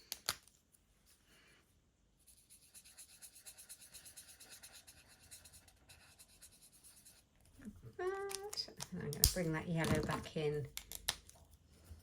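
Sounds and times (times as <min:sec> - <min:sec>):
marker scratching on cardstock: 0:02.3 - 0:07.3.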